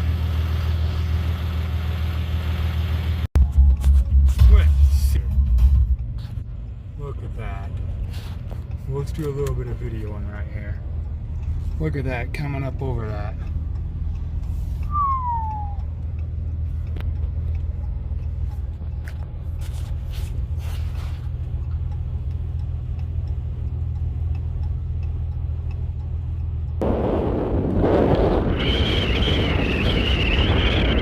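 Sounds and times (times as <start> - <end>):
vehicle engine idling: 0.0 - 27.6
falling whistle: 14.8 - 15.9, 28.4 - 31.0
rushing noise: 26.8 - 31.0.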